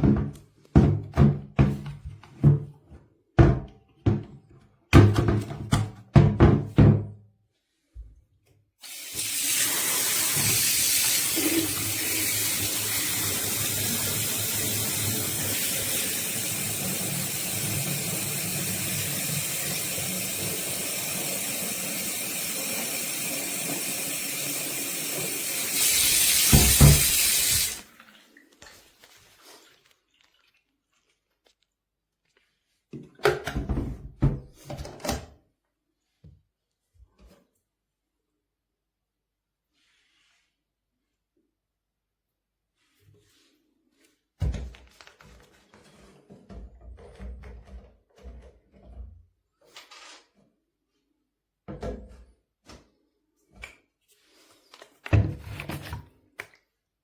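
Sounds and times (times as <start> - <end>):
water running from a tap: 8.8 - 28.3.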